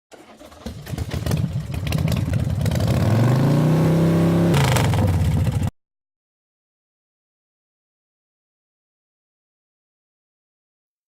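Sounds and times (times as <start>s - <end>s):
motorcycle engine revving: 0.2s - 5.7s.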